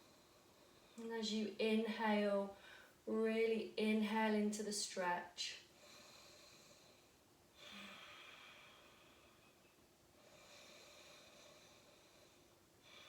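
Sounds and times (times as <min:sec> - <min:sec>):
soft slow breathing: 0:00.0 - 0:01.1, 0:02.5 - 0:03.1, 0:05.6 - 0:13.0.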